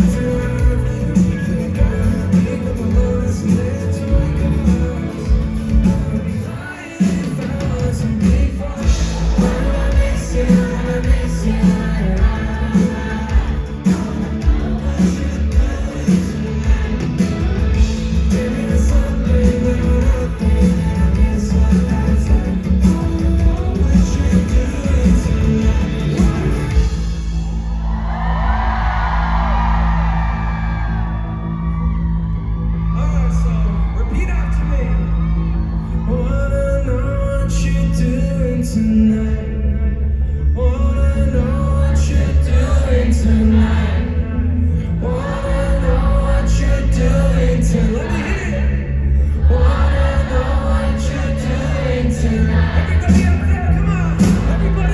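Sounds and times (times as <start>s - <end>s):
person singing: 0.0s - 27.4s
rock band playing: 0.0s - 28.0s, 52.5s - 54.9s
drums: 0.0s - 36.5s, 49.5s - 54.9s
audience cheering and screaming: 0.0s - 37.2s, 45.0s - 54.9s.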